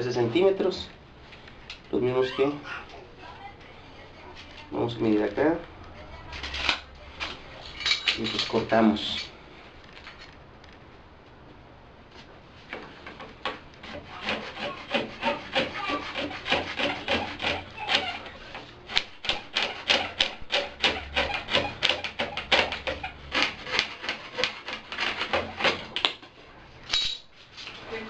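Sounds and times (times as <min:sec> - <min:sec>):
hand saw cutting plastic pipe: 0:13.4 - 0:26.2.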